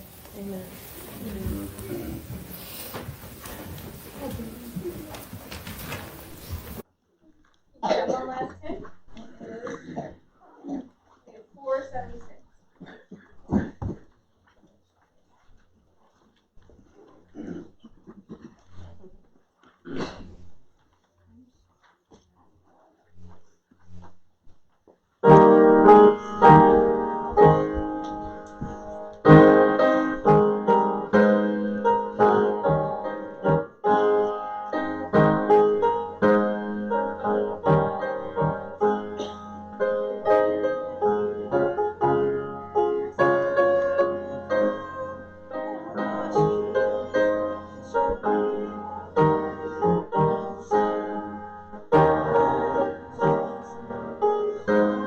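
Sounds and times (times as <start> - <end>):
faint low rustles: 0.0 - 6.8
piano playing hymn chords: 25.2 - 55.0.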